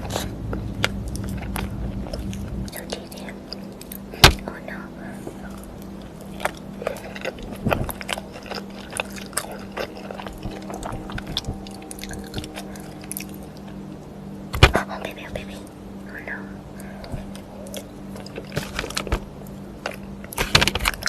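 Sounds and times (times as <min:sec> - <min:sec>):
steady low hum: 0:00.0 - 0:21.0
crunchy biting and chewing: 0:05.1 - 0:14.9, 0:16.8 - 0:21.0.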